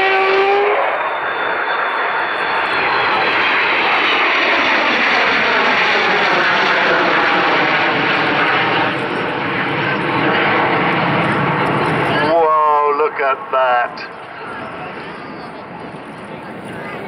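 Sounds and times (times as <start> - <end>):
jet bomber roaring past: 0.0 - 17.0.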